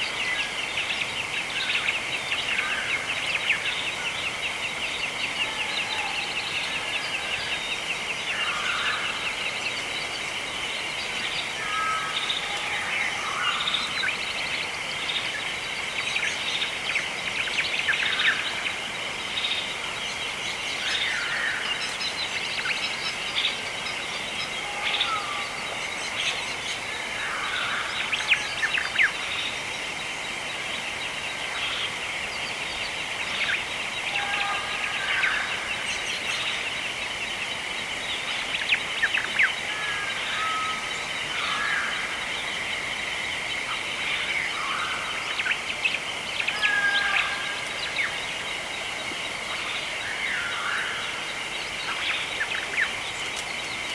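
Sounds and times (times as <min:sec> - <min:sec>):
birds chirping and calling: 0:00.0 - 0:53.9.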